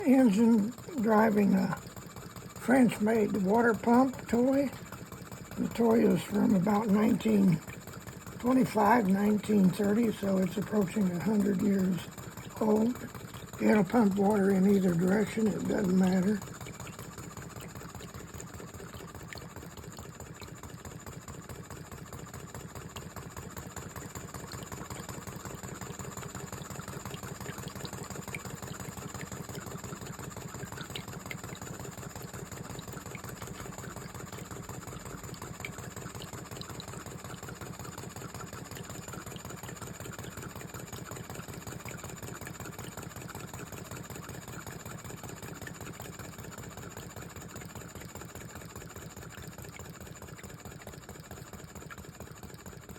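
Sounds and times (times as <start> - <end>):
model steam engine running: 0.0 - 52.9
toy water pump beating: 0.0 - 52.9.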